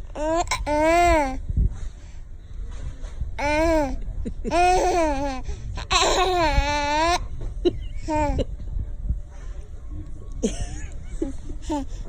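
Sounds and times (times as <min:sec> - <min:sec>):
baby laughing: 0:03.4 - 0:08.5.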